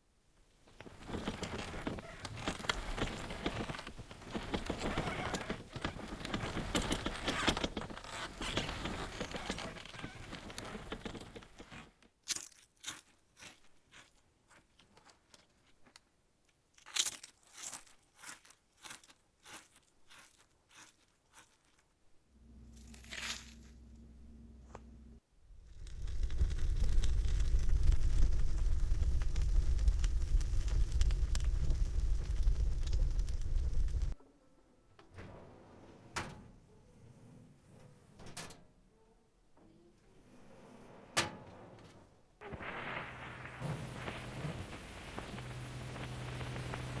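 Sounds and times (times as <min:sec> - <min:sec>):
crackling and crunching: 0:00.7 - 0:24.0, 0:25.5 - 0:34.2, 0:42.4 - 0:47.0
low steady hum: 0:22.3 - 0:38.3, 0:42.4 - 0:47.0.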